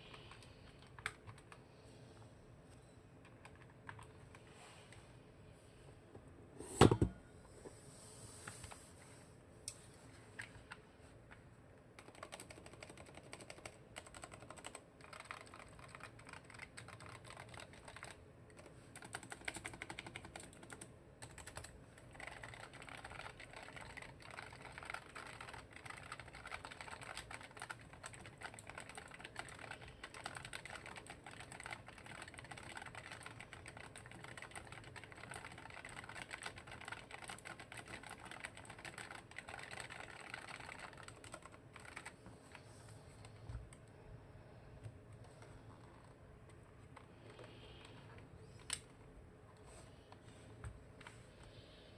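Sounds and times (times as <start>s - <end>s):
mechanical keyboard typing: 0.1s - 1.6s, 3.2s - 4.1s, 11.9s - 42.6s.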